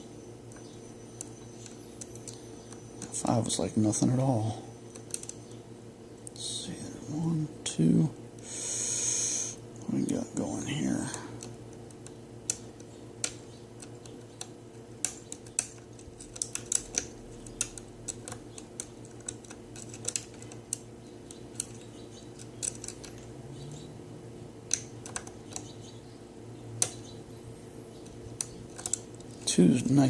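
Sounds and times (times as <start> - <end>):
low steady hum: 0.0 - 30.0
lock pins clicking: 11.4 - 23.3, 24.7 - 25.8, 28.0 - 29.5.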